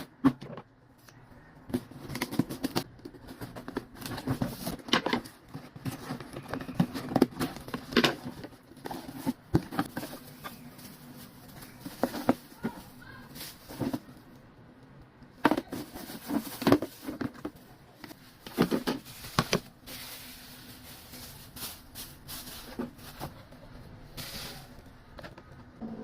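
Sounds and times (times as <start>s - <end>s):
package being handled and opened: 1.0s - 14.5s.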